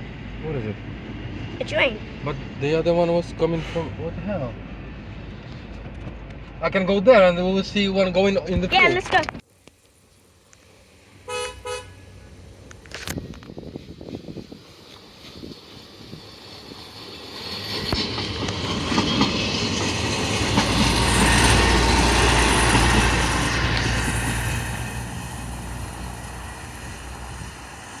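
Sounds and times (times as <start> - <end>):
train rumbling past: 0.0 - 9.2, 10.2 - 28.0
wheels clicking on rails: 12.5 - 28.0.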